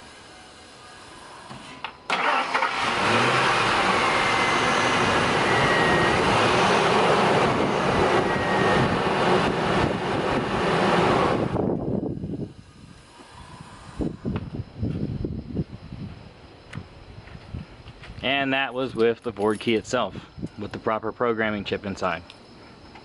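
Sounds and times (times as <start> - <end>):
engine running: 0.0 - 14.8
engine cranking and starting: 1.6 - 5.3.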